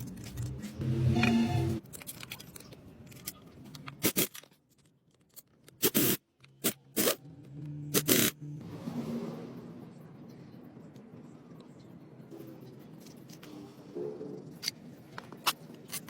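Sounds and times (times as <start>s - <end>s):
short scraping strokes: 0.8s - 1.8s.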